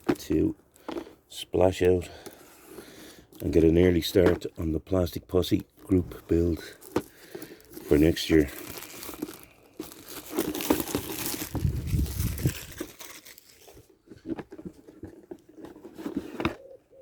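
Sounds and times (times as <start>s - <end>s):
packaging crinkling and rustling: 0.0s - 1.1s, 5.4s - 16.8s.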